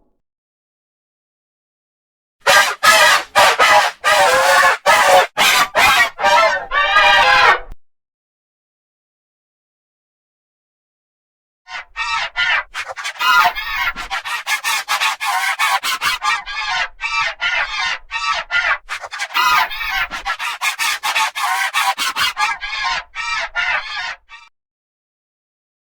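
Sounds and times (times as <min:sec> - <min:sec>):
harsh honking calls: 0:02.4 - 0:07.2, 0:12.0 - 0:24.4.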